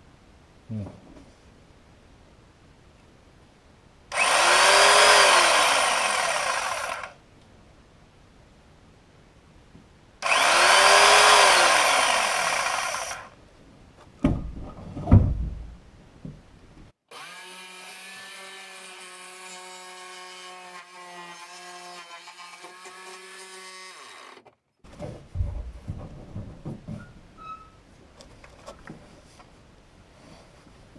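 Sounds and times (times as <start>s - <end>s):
jigsaw cutting wood: 4.1s - 7.2s, 10.2s - 13.4s, 17.1s - 24.5s.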